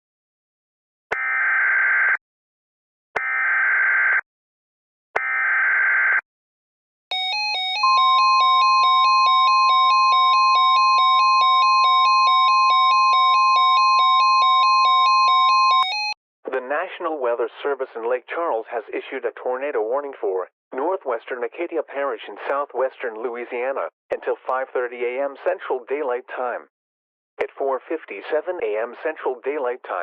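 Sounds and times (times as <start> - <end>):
steady high alarm tone: 7.1 - 16.2.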